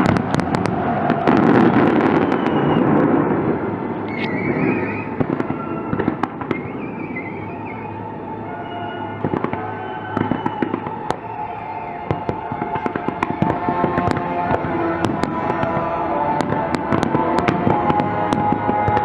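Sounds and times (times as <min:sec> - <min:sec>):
fireworks popping and banging: 0:00.0 - 0:08.4, 0:09.0 - 0:19.0
music playing: 0:00.0 - 0:19.0.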